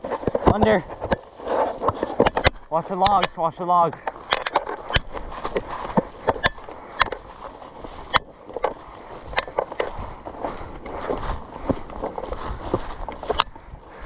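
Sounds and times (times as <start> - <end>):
leaves rustling: 0.0 - 3.0, 4.0 - 14.0
twigs snapping underfoot: 0.0 - 14.0
footsteps running on forest litter: 3.7 - 14.0.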